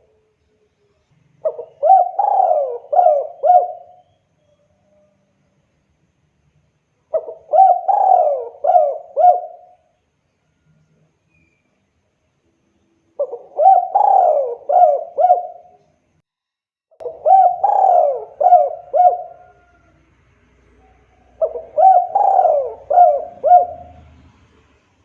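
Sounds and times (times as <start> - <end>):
dove cooing: 1.4 - 4.1, 7.1 - 9.9, 13.2 - 15.8, 17.0 - 20.0, 20.8 - 24.1.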